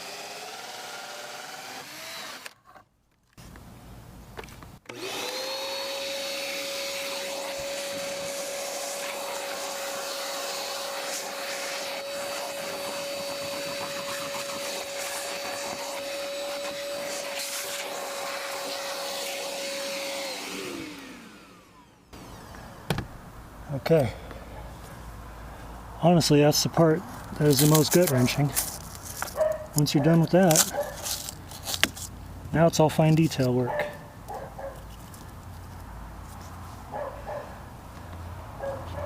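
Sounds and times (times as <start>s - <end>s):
electric motor running: 0.0s - 2.6s, 4.9s - 23.3s.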